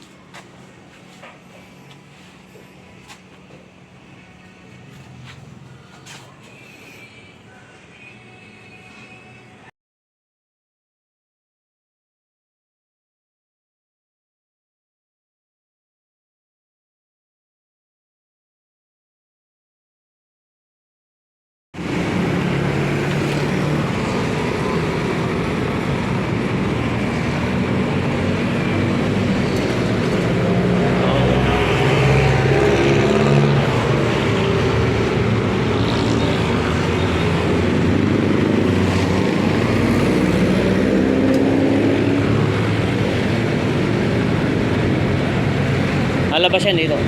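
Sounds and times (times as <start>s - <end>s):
traffic noise: 0.0s - 9.7s, 21.8s - 47.0s.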